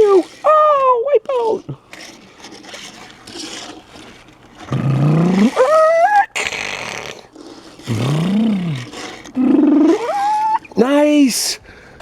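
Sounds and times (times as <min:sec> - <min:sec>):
man imitating car engine revving: 0:07.9 - 0:10.6.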